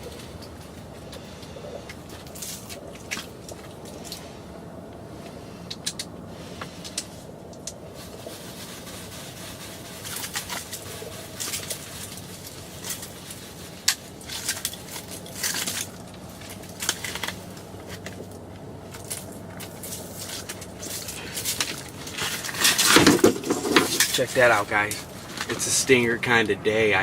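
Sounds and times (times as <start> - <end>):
faint low hum: 0.0 - 27.0
clothing rustling and crinkling: 6.5 - 27.0.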